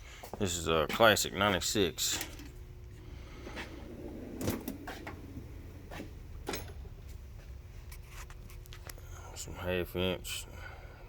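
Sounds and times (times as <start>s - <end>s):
low hum: 1.8s - 9.6s
metal drawer sliding open: 3.8s - 6.9s.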